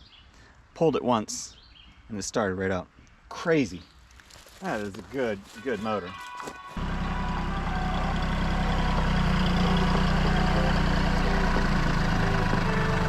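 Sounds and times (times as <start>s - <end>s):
sawmill engine running: 6.8s - 13.0s.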